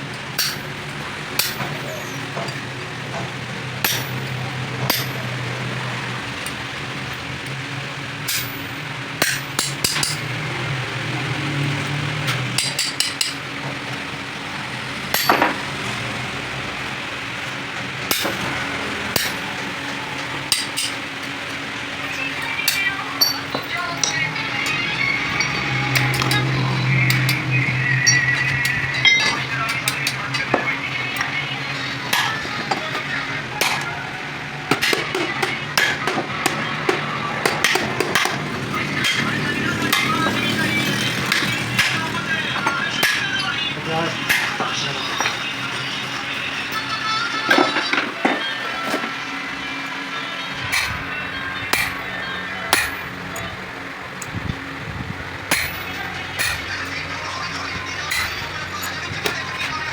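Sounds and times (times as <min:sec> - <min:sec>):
hand tools tapping metal: 0:00.0 - 0:34.0, 0:34.7 - 0:49.2, 0:49.8 - 0:59.9
hammer blows on metal: 0:50.6 - 0:53.6, 0:55.5 - 0:56.8.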